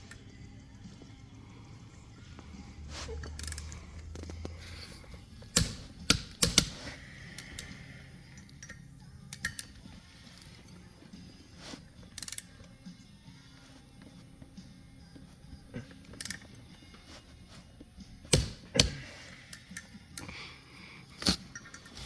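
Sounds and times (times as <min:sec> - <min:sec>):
hand tools clicking and knocking: 0:05.4 - 0:07.8, 0:18.3 - 0:19.9.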